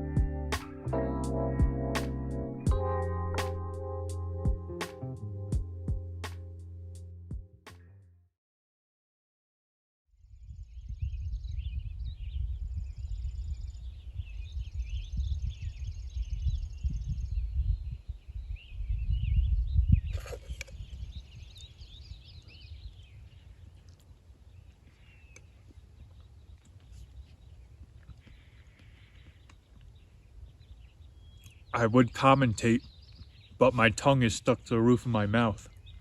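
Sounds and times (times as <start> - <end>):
wind buffeting microphone: 10.3 - 34.1
birds chirping and trilling: 11.0 - 36.0.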